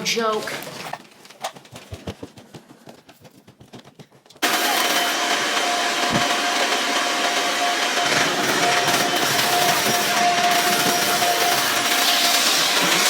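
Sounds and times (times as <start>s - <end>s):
vacuum cleaner running: 4.4s - 13.0s.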